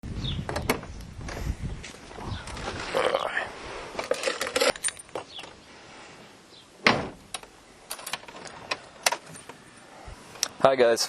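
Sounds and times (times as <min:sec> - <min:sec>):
loud thump: 0:06.8 - 0:07.2.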